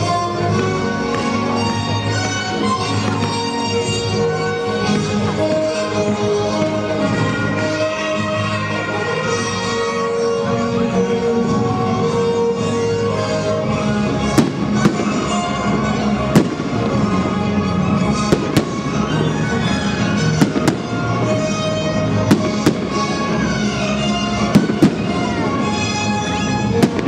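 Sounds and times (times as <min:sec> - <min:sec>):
fireworks bangs: 0:00.0 - 0:08.1, 0:13.8 - 0:27.0
music: 0:00.0 - 0:27.0.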